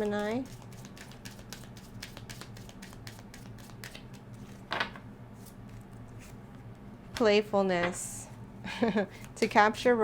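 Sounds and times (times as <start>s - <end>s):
low steady hum: 0.0s - 10.0s
cards being shuffled: 0.2s - 4.6s.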